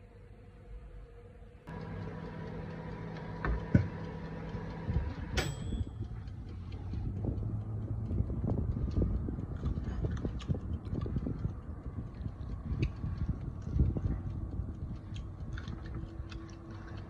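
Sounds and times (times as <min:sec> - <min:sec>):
steady low hum: 0:00.0 - 0:17.0
metallic click with ring: 0:05.4 - 0:06.1.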